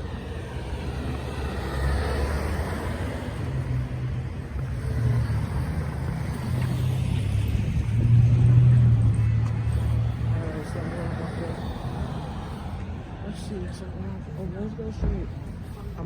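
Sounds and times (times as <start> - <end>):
car engines rumbling: 0.0 - 16.0.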